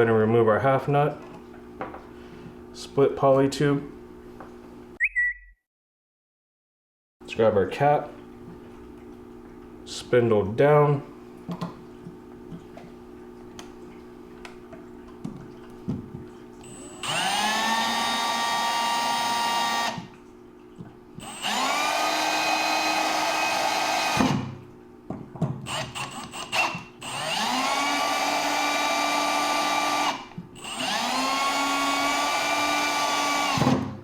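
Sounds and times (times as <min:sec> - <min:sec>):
power drill whining: 0:16.6 - 0:20.1, 0:21.2 - 0:24.5, 0:25.7 - 0:33.8.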